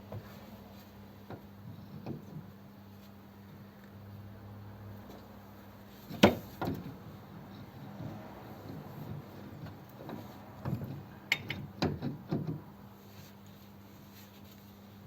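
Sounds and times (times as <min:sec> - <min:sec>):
metal clicks and knocks: 0:10.0 - 0:12.6.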